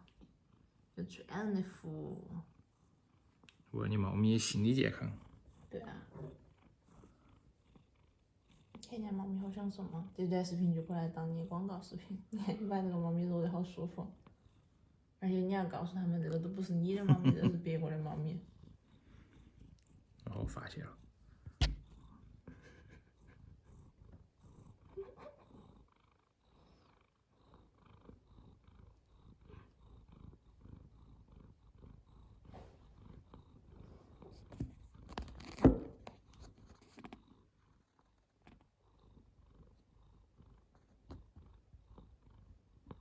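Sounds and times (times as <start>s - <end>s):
cat purring: 0.0s - 43.0s
sharp knock: 21.6s - 21.9s.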